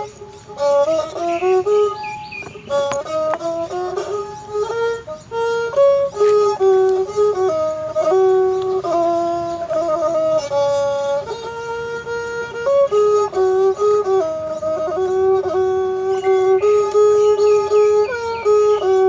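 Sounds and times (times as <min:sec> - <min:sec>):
reed pipe solo melody: 0:00.0 - 0:19.0.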